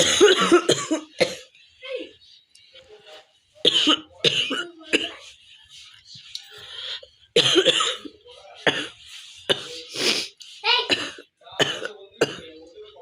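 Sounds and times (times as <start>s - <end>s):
woman coughing hard: 0.0s - 1.5s, 3.6s - 5.3s, 7.4s - 12.5s.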